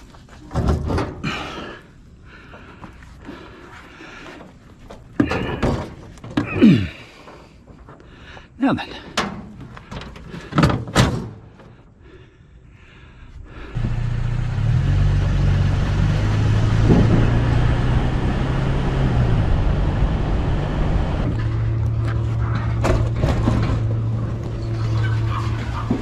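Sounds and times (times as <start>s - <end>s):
vehicle engine running: 13.8s - 26.0s
knocks: 16.8s - 17.4s.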